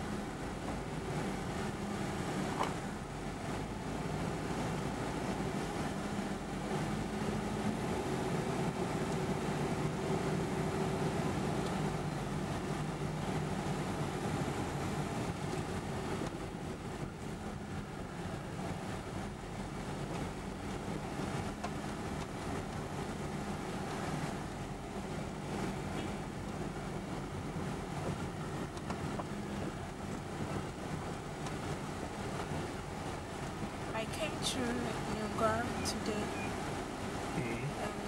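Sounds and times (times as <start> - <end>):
car engine hum: 0.0 - 38.0
road noise: 0.0 - 38.0.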